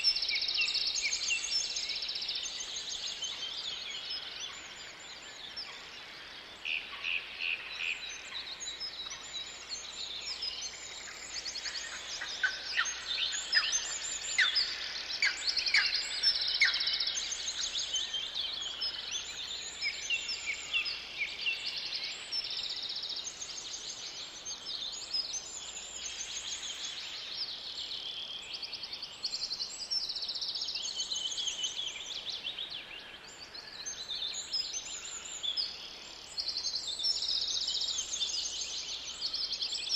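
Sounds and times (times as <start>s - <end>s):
songbirds chirping and trilling: 0.0s - 39.9s.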